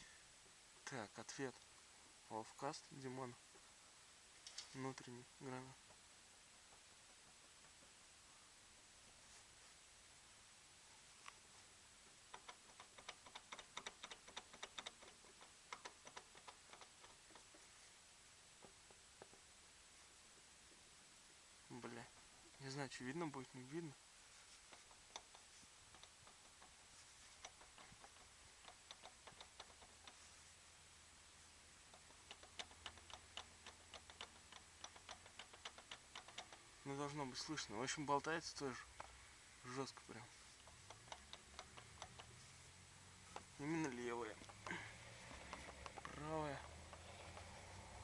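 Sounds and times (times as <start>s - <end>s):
drive shaft joint clicking knocks: 12.3s - 17.6s, 24.6s - 30.2s, 31.9s - 36.7s, 40.6s - 42.4s, 44.4s - 47.9s.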